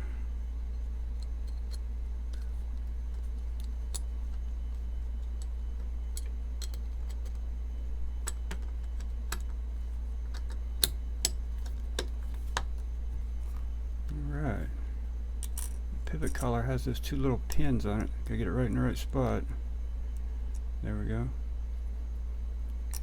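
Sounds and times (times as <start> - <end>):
steady low hum: 0.0 - 23.0
small metal parts clicking: 6.1 - 7.4.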